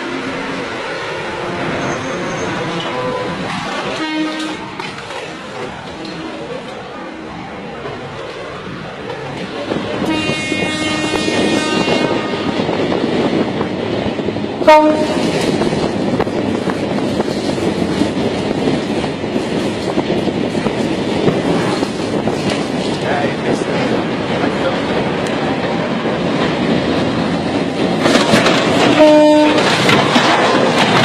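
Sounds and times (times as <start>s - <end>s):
horn blowing: 4.0s - 4.6s, 10.0s - 12.6s, 14.7s - 15.2s, 29.0s - 29.6s
rumbling clattering noise: 12.8s - 31.0s.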